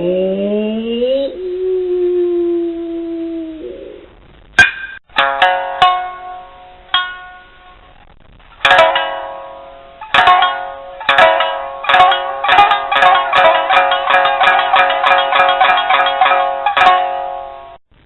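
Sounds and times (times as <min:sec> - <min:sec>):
plucked shamisen: 0:04.6 - 0:17.8.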